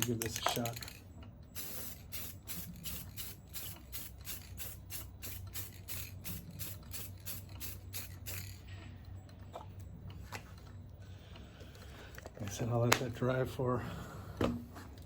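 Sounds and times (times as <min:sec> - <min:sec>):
aerosol spray hissing pulses: 0:01.6 - 0:08.4.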